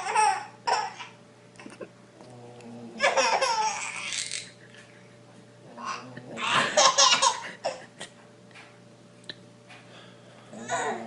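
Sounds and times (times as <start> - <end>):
person laughing: 1.6 - 2.0, 4.3 - 8.3.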